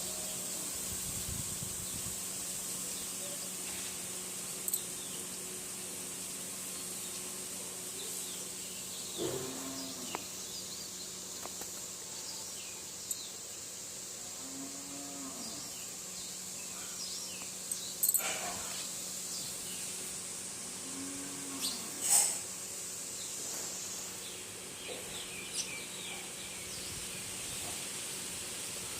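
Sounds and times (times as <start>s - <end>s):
high insect hum: 0.0s - 28.9s
small birds chirping: 15.3s - 20.1s, 23.0s - 27.8s.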